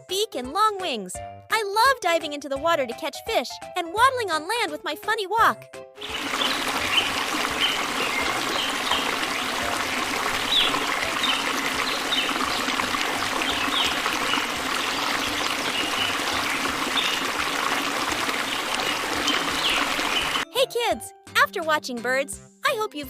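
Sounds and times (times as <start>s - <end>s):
trickling water: 6.0s - 20.4s.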